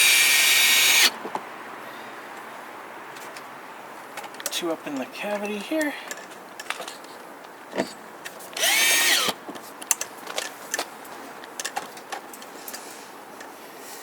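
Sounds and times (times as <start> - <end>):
power drill driving a screw: 0.0 - 1.1, 8.6 - 9.4.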